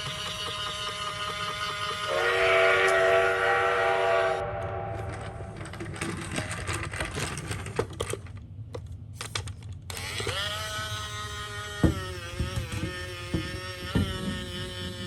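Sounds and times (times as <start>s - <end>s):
plastic toy cars rattling: 5.1s - 15.0s
knocks: 11.8s - 15.0s.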